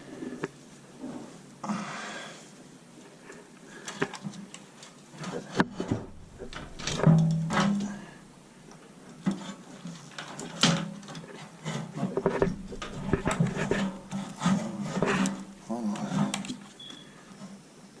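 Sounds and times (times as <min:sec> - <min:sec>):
low hum: 0:05.7 - 0:08.8, 0:12.4 - 0:15.8.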